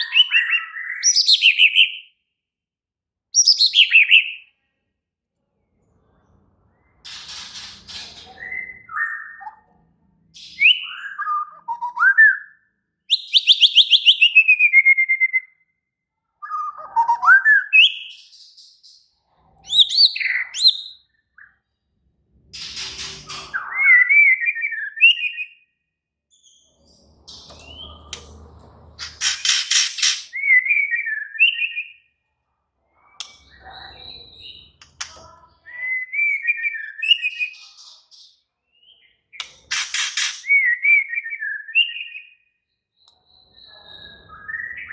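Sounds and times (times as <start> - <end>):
bird singing whistled phrases: 10.6 - 15.7, 16.4 - 18.3, 23.6 - 25.6, 30.3 - 32.0, 35.6 - 37.8, 40.4 - 42.5, 43.3 - 44.9
harsh rapid bird rattles: 29.0 - 30.3, 39.6 - 40.5.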